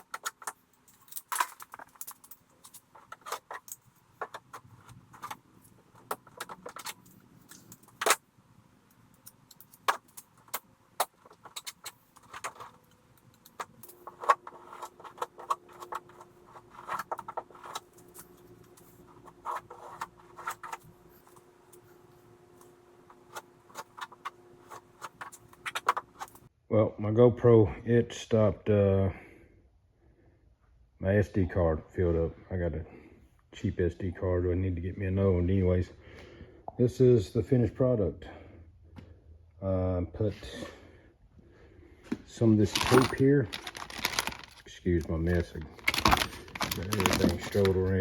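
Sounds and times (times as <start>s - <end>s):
tools clicking and jangling: 0.0s - 4.4s, 42.6s - 48.0s.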